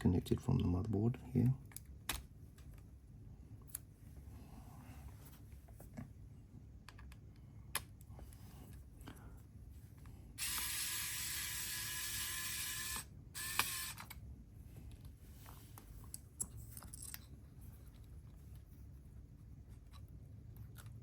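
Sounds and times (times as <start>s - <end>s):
small motor whirring: 10.4s - 14.1s.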